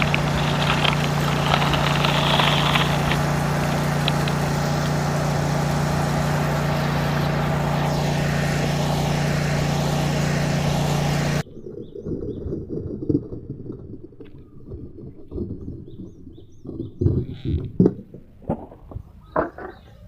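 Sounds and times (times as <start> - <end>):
toy excavator motor hum: 0.0 - 11.4
birds chirping: 0.0 - 12.5, 18.9 - 20.0.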